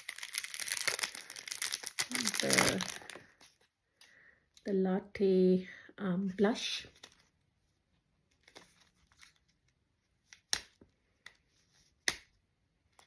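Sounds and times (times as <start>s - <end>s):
packaging snapping: 0.0s - 3.3s
packaging crinkling: 0.0s - 3.6s.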